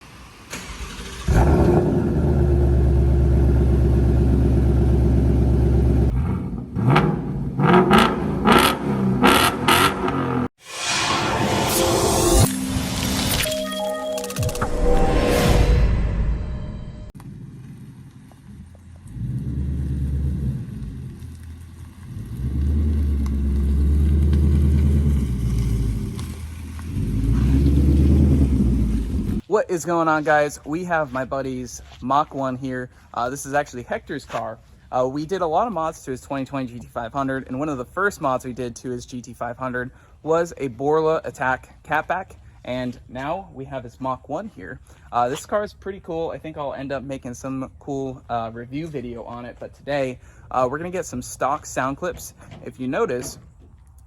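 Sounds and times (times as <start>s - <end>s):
car exhaust running and revving: 1.3s - 10.5s, 17.2s - 29.4s.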